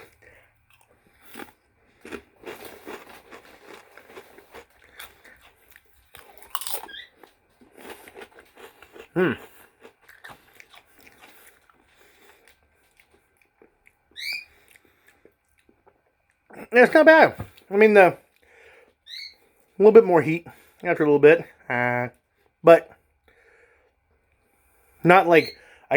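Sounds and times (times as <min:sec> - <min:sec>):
crunching and chewing chips: 0:00.0 - 0:19.8.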